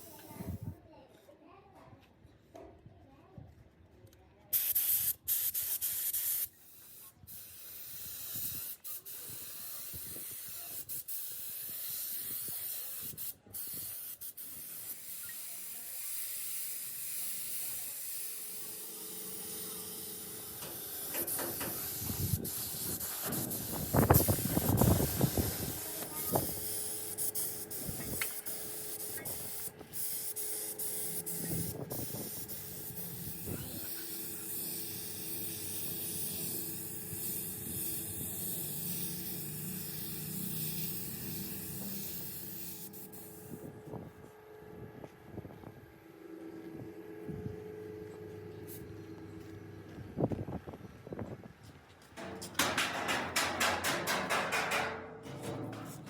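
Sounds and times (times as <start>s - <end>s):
spraying hiss: 4.6s - 43.4s
rough uneven noise: 52.2s - 56.0s.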